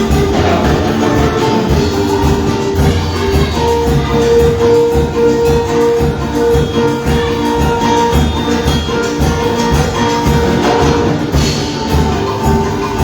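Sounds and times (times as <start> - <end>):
live band music: 0.0 - 13.0.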